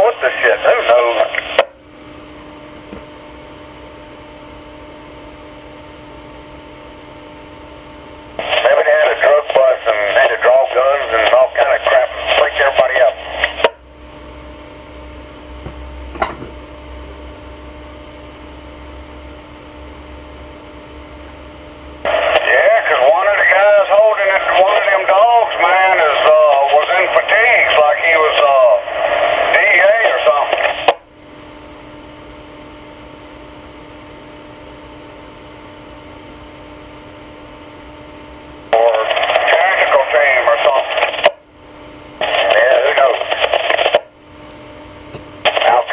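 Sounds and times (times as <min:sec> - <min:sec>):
two-way radio transmission: 0:00.0 - 0:01.8, 0:08.4 - 0:13.8, 0:22.0 - 0:31.1, 0:38.6 - 0:41.5, 0:42.1 - 0:44.2, 0:45.4 - 0:45.9
low background hum: 0:00.0 - 0:45.9
noise bed: 0:00.0 - 0:45.9.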